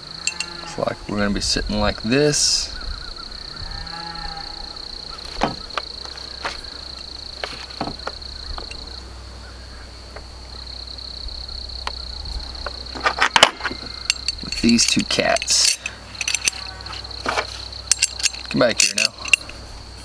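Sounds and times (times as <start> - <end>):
high-pitched insect trill: 0.0 - 20.0
metal hardware clinking: 0.2 - 0.8, 5.2 - 9.0, 12.6 - 19.7.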